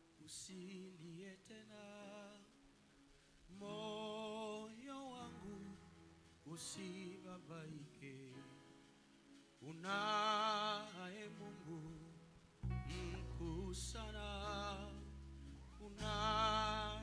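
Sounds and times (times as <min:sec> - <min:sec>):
gospel singing: 0:03.5 - 0:08.5, 0:09.6 - 0:17.0.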